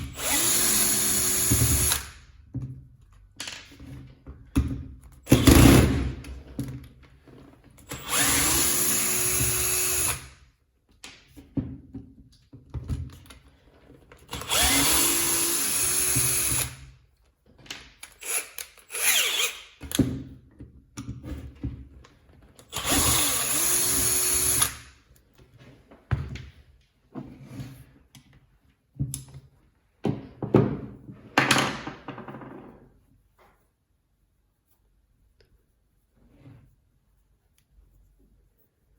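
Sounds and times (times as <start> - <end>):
power tool motor spinning up: 0.1 - 2.1, 8.0 - 10.2, 14.4 - 16.7, 18.2 - 19.6, 22.7 - 24.8
clicks and knocks of parts handled: 2.4 - 5.3, 17.2 - 18.9.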